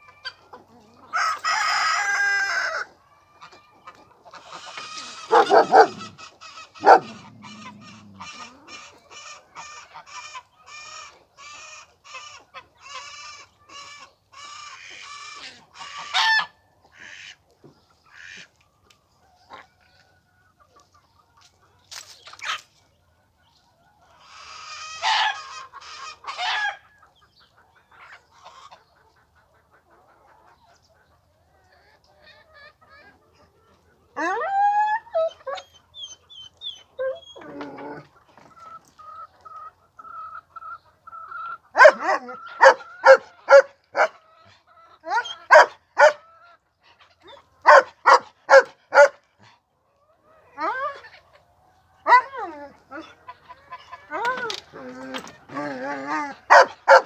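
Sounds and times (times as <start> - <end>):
chicken squawk: 0.0 - 17.3, 24.2 - 26.9, 31.6 - 49.2, 52.0 - 57.0
chickens clucking: 0.0 - 57.0.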